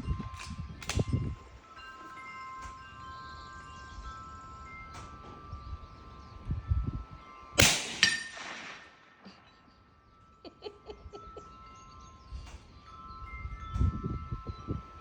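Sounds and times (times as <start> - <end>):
wind chimes: 0.0 - 15.0
rifle shot crack: 7.6 - 9.2
metallic impact ringing: 7.6 - 9.4.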